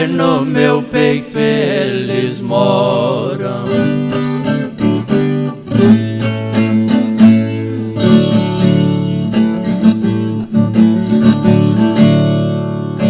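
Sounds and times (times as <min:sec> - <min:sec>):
strummed acoustic guitar chords: 0:00.0 - 0:13.0
plucked string melody: 0:03.8 - 0:13.0.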